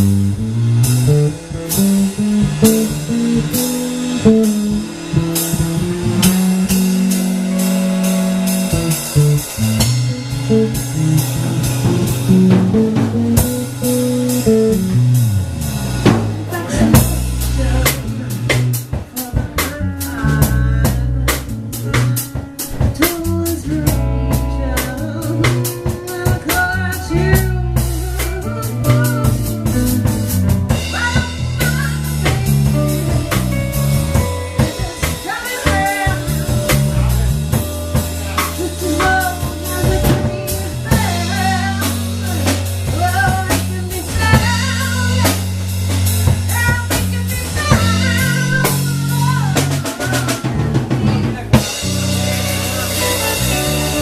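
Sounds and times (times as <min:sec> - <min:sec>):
wavering melodic lead: 0:00.0 - 0:17.8
bass line: 0:00.0 - 0:54.0
blues band playing: 0:00.0 - 0:54.0
drum kit rimshots and snare: 0:00.0 - 0:54.0.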